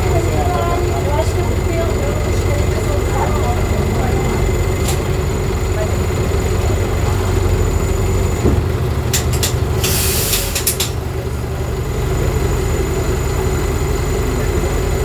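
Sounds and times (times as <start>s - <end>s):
diesel bus engine running: 0.0s - 15.0s
compressed air hisses: 9.8s - 10.9s.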